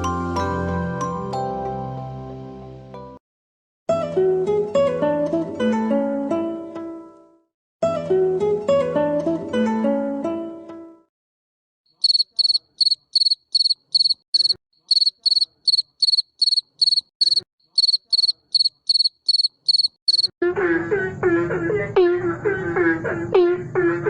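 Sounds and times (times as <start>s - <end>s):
chorus of insect calls: 12.0s - 20.3s
cricket chirping: 12.0s - 20.3s.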